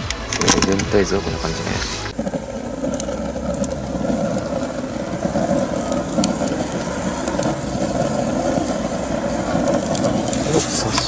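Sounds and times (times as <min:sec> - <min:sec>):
faint fire crackles: 0:00.0 - 0:11.0
stove fire rushing rumble: 0:00.0 - 0:11.0.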